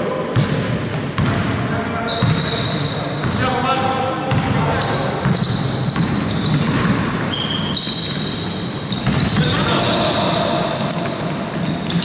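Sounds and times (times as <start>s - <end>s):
ball bouncing: 0.4s - 1.5s, 4.3s - 7.2s, 8.9s - 9.6s
sneakers squeaking: 0.4s - 12.0s.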